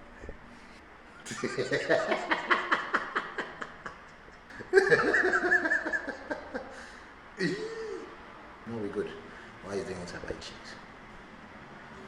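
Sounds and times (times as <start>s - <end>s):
person laughing: 1.3s - 6.8s, 7.4s - 8.1s.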